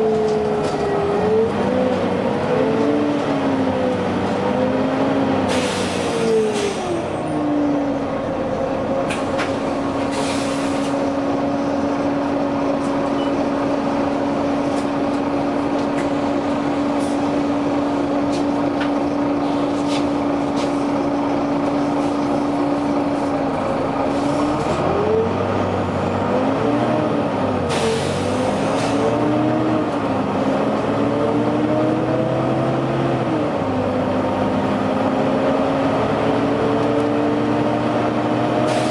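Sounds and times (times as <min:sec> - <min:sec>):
bus diesel engine: 0:00.0 - 0:38.9
air brake hisses: 0:05.5 - 0:06.9, 0:10.0 - 0:11.0.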